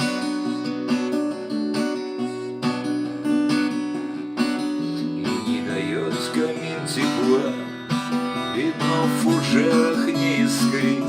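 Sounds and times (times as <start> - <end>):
acoustic guitar strumming: 0.0 - 11.0.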